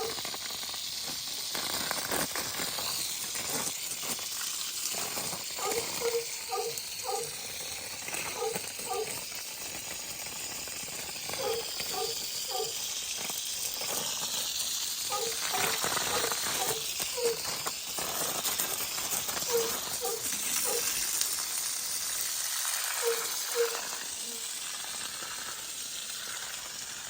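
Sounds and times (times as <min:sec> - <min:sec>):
dog barking: 0:00.0 - 0:00.2, 0:05.6 - 0:07.4, 0:08.3 - 0:09.2, 0:11.4 - 0:12.8, 0:15.1 - 0:17.5, 0:19.5 - 0:20.9, 0:23.0 - 0:24.5
steady high hiss: 0:10.9 - 0:27.0.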